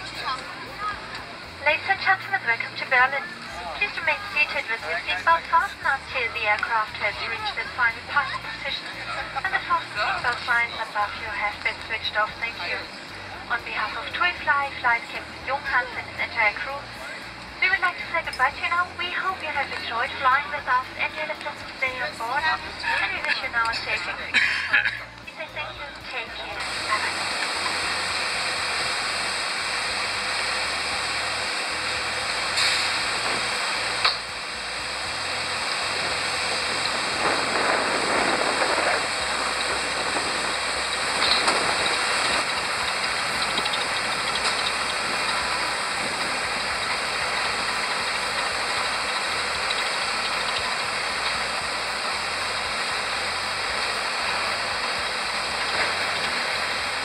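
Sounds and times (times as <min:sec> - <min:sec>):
airplane cabin hiss: 0:32.5 - 0:34.2.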